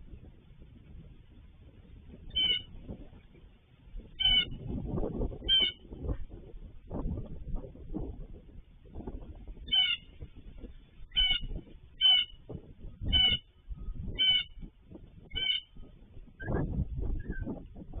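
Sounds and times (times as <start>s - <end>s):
bird calling harsh notes: 2.3s - 2.7s, 4.2s - 4.6s, 5.4s - 5.8s, 9.6s - 10.2s, 11.1s - 12.4s, 13.0s - 14.6s, 15.3s - 15.8s.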